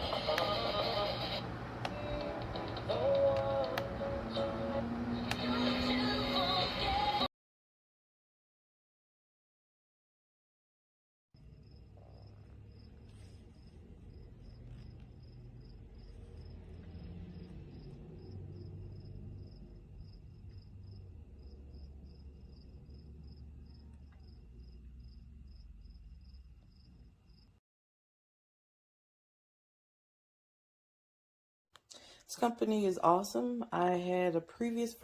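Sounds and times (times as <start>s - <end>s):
crickets chirping: 11.4s - 27.6s.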